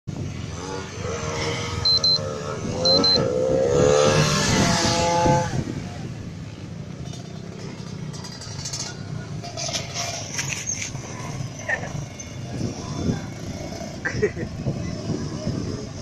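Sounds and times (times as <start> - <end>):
motorcycle engine revving: 0.1 - 16.0
short high beeps: 1.8 - 3.3.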